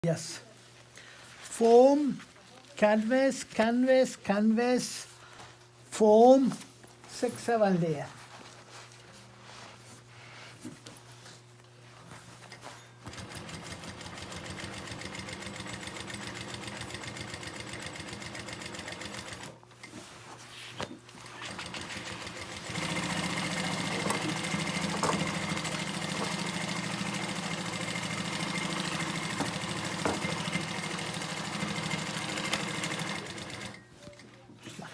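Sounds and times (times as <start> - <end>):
industrial sewing machine stitching: 13.1 - 19.6, 21.2 - 33.9.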